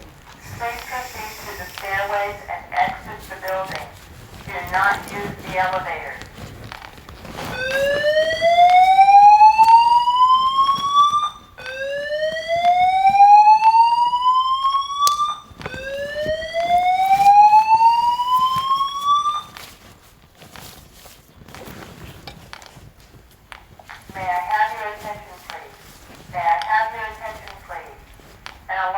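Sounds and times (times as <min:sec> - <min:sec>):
fire alarm slow whoop tone: 0:00.3 - 0:19.9.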